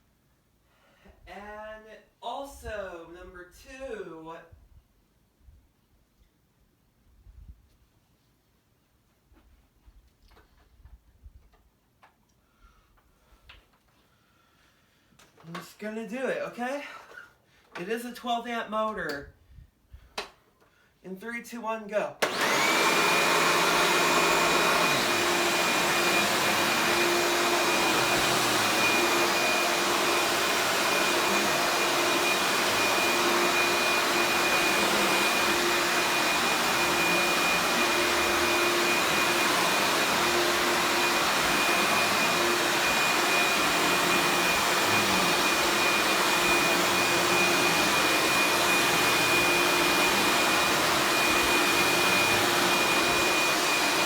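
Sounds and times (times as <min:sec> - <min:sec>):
vacuum cleaner running: 0:22.2 - 0:54.0.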